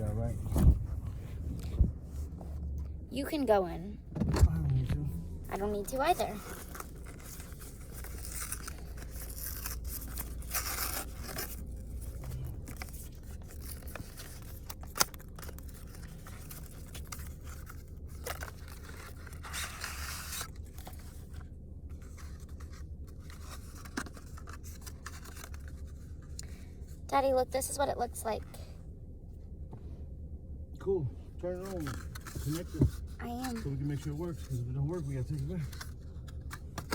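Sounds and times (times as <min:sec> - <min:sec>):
plastic and cardboard rustling: 0:05.5 - 0:26.6, 0:31.4 - 0:36.9.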